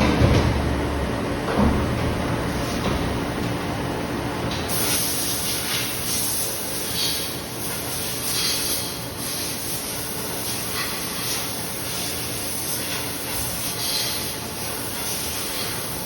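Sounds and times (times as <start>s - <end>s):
grinding machine hissing: 4.6s - 16.0s.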